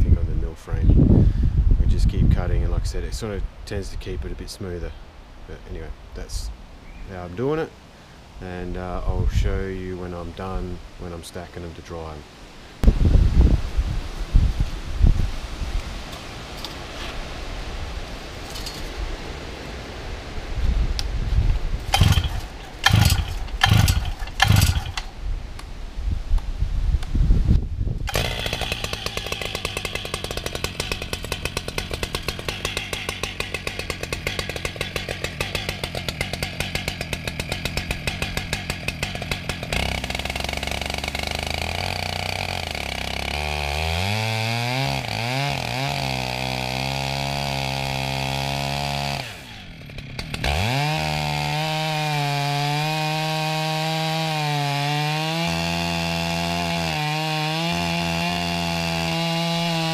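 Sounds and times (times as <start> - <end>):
chainsaw cutting log: 21.8 - 25.2, 28.1 - 59.9.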